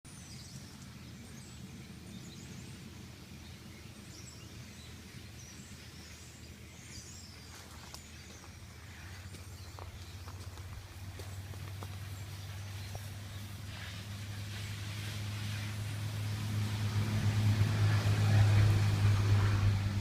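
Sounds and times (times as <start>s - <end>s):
steady low hum: 0.1s - 20.0s.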